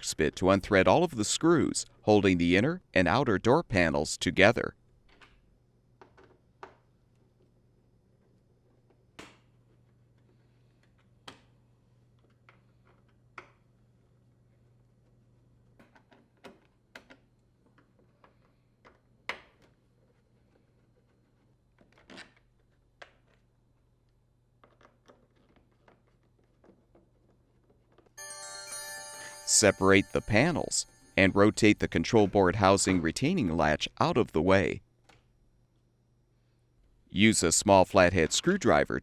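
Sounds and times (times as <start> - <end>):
background music: 28.2 - 33.1.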